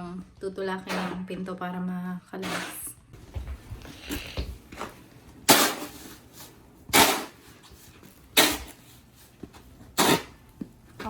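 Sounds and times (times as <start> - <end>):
snow shovel scraping snow: 2.4 - 2.9, 5.5 - 9.1, 9.9 - 10.4.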